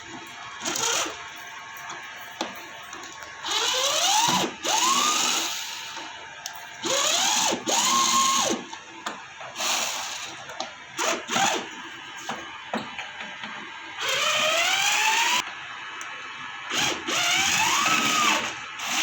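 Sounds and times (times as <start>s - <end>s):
electric screwdriver whining: 0.6s - 1.2s, 3.5s - 6.0s, 6.8s - 8.6s, 16.7s - 19.0s.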